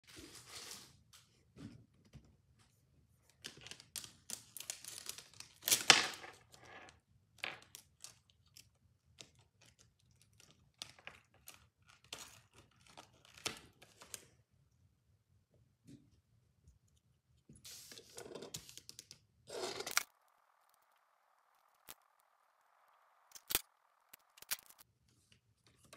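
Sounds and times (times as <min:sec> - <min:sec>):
packaging crinkling and clicking: 0:23.3 - 0:24.8.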